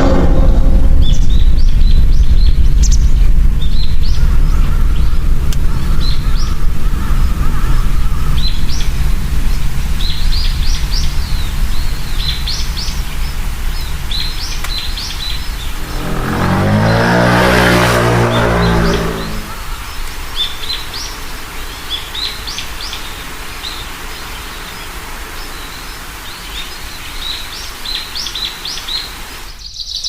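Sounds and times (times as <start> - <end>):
loud rough low sound: 0.0 - 19.8
steady low rumble: 0.0 - 20.0
small birds chirping: 1.0 - 17.0, 18.6 - 30.0.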